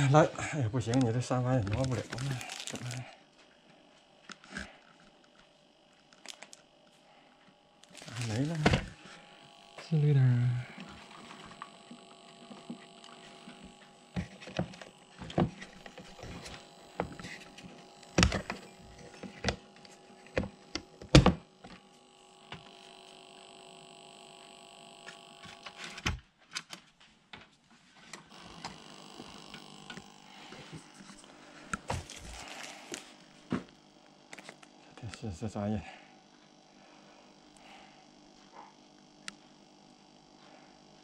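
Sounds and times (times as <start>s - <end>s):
faint steady hum: 0.0s - 26.2s, 28.1s - 41.0s.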